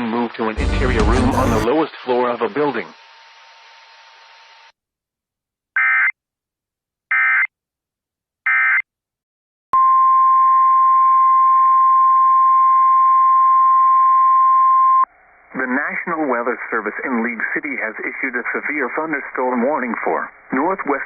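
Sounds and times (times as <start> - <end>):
digital data tone bursts: 1.3 - 1.7.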